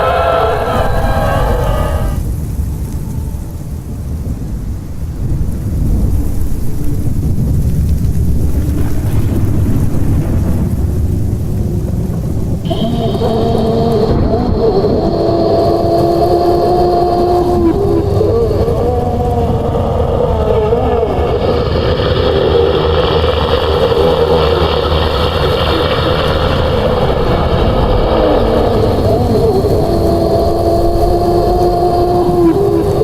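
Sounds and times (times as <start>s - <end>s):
wavering moaning tones: 0.0s - 3.8s, 12.6s - 33.0s
deep continuous rumble: 0.0s - 33.0s.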